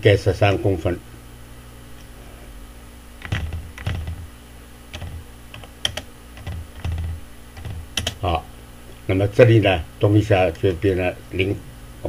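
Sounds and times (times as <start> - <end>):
keyboard typing: 3.2 - 4.3, 4.9 - 8.2.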